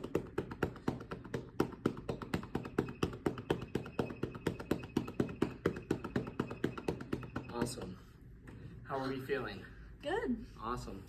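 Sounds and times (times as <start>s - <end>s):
cupped hands patting chest: 0.0s - 8.0s.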